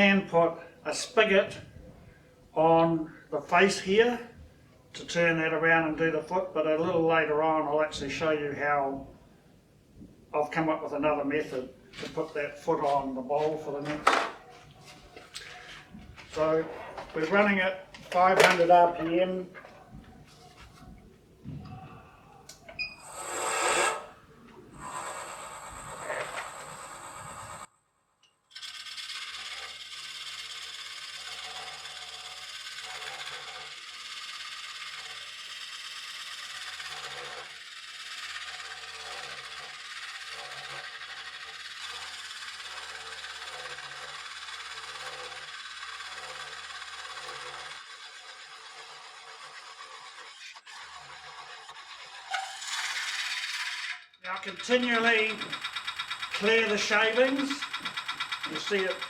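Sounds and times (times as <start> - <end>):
lathe blade scraping wood: 11.5 - 19.8, 23.0 - 27.7, 28.9 - 59.0.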